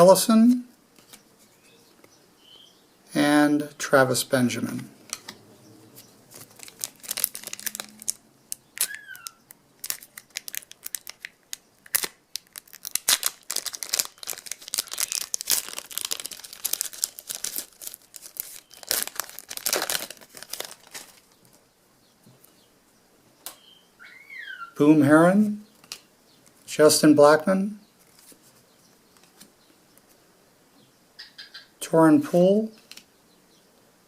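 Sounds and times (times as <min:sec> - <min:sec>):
wrapper crinkling and tearing: 0:06.2 - 0:21.6.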